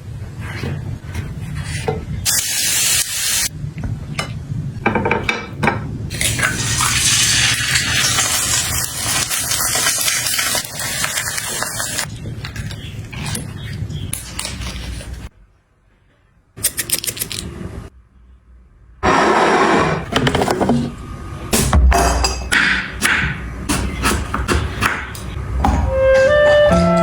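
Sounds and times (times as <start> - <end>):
liquid pouring and splashing: 6.1 - 12.1.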